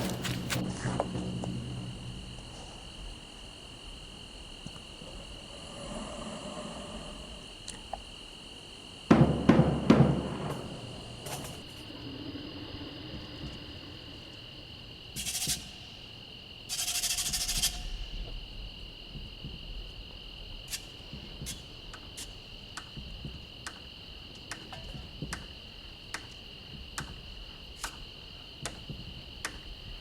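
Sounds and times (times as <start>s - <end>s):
crickets chirping: 0.0s - 30.0s
drum strikes: 9.1s - 10.7s.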